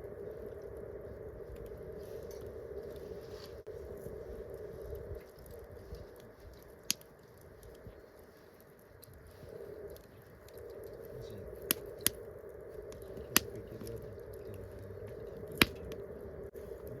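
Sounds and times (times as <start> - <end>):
campfire crackling: 0.0 - 17.0
sharp fire pops: 5.1 - 7.8, 9.9 - 16.2.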